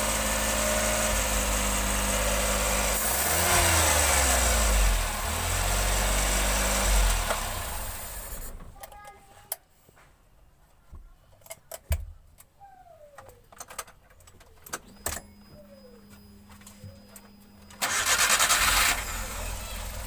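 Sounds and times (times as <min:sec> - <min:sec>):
car engine cranking and starting: 0:00.0 - 0:08.8, 0:17.2 - 0:20.0.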